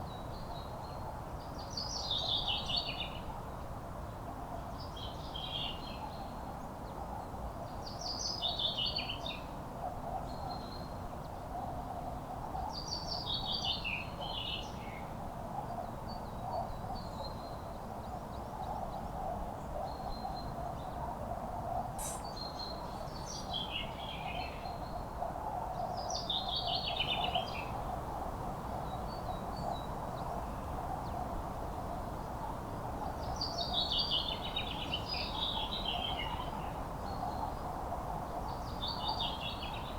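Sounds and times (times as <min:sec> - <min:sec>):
songbird singing: 0:21.7 - 0:25.0, 0:28.6 - 0:39.9.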